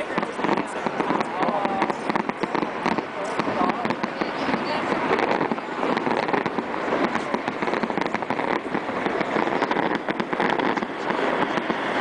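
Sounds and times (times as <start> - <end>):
fireworks crackling: 0.0 - 12.0.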